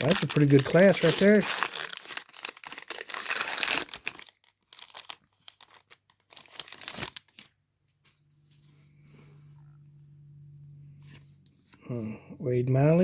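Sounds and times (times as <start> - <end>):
plastic wrapper tearing and crinkling: 0.0 - 7.5.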